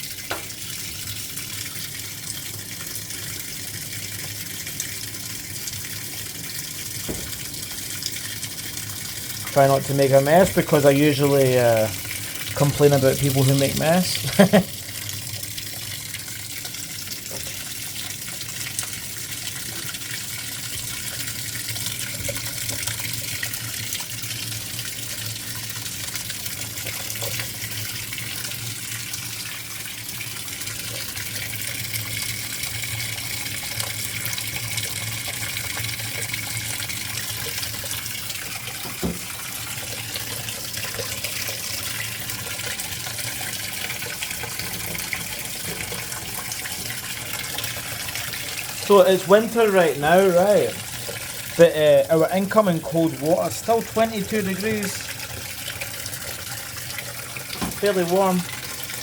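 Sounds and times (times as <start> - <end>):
water pouring into washing machine: 0.0 - 59.0
short knock: 7.1 - 7.4.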